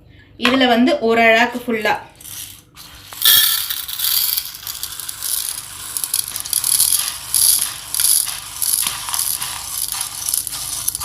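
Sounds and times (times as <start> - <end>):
dry lentils rattling into a cup: 2.2 - 11.0.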